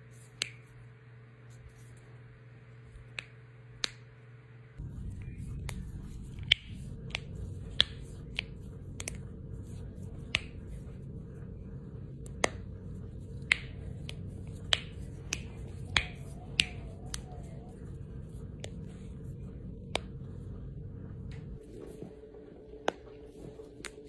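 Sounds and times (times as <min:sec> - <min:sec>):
low background hum: 0:00.0 - 0:24.0
knuckles cracking: 0:05.1 - 0:11.1, 0:12.2 - 0:20.6.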